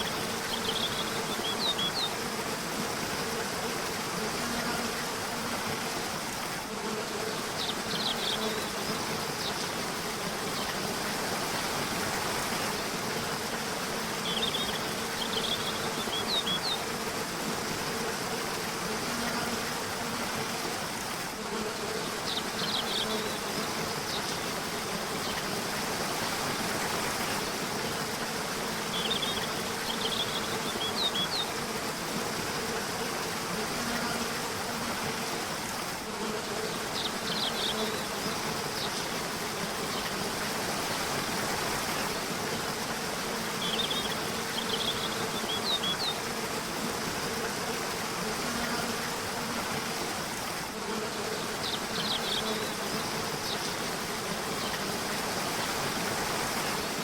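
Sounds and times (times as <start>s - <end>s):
small birds chirping: 0.0s - 2.2s, 14.2s - 16.9s, 51.2s - 53.8s
river water rushing: 53.2s - 57.0s.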